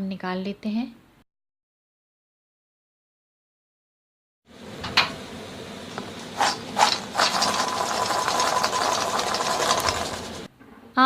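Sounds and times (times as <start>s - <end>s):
fried chickpeas rattling: 6.8s - 10.4s.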